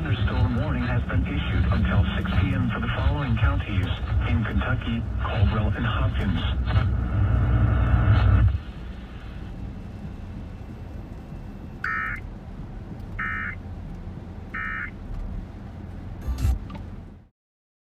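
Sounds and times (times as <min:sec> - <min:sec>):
low hum and hiss: 0:00.0 - 0:17.3.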